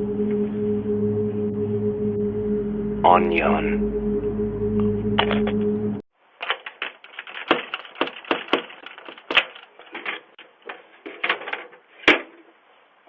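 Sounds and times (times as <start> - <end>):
droning hum: 0.0 - 6.0
sharp clicks and knocks: 6.4 - 12.4.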